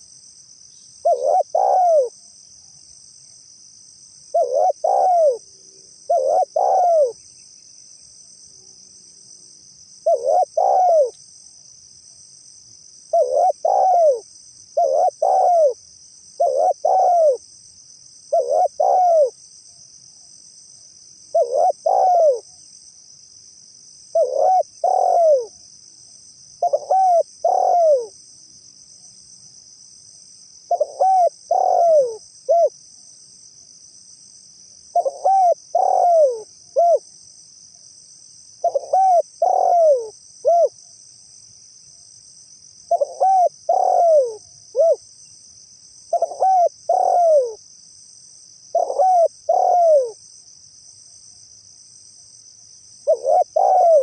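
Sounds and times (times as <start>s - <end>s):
high insect chirring: 0.0s - 54.0s
dove cooing: 1.0s - 2.2s, 4.3s - 5.4s, 6.1s - 7.2s, 10.0s - 11.2s, 13.1s - 15.8s, 16.4s - 17.4s, 18.3s - 19.4s, 21.3s - 22.5s, 24.1s - 25.6s, 26.6s - 28.2s, 30.7s - 32.7s, 34.9s - 37.1s, 38.6s - 40.8s, 42.9s - 45.0s, 46.1s - 47.6s, 48.7s - 50.2s, 53.1s - 54.0s.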